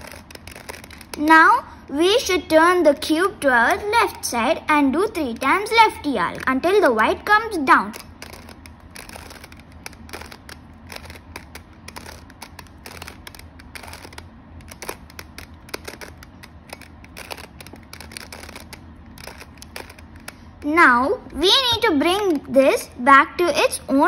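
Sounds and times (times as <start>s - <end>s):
puzzle cube layers clicking: 0.0s - 1.3s, 5.0s - 20.8s, 21.4s - 22.5s.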